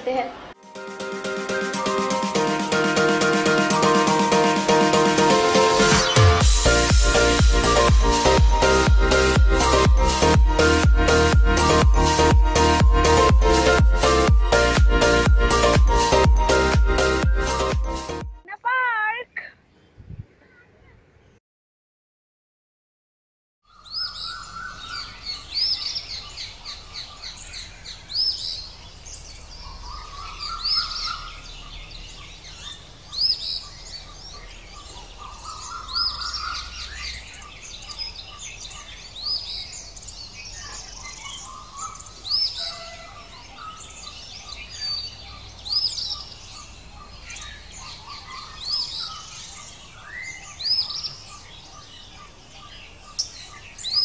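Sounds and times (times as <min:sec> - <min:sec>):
birds chirping: 0:00.0 - 0:21.4, 0:23.7 - 0:54.0
lower rising bird calls: 0:23.7 - 0:54.0.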